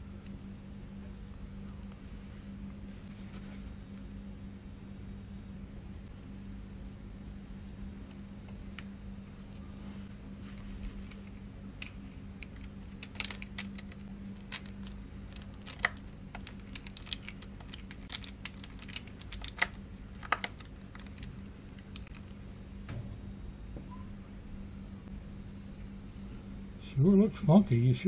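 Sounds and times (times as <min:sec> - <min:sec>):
steady low hum: 0:00.0 - 0:28.0
small metal parts clicking: 0:11.8 - 0:22.3.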